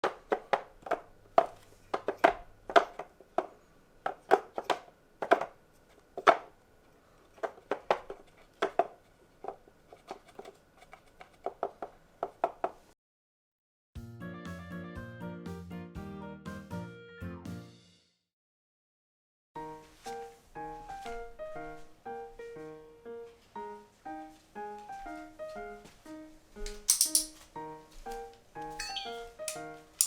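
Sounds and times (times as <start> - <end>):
music: 14.0 - 18.3, 19.6 - 30.0.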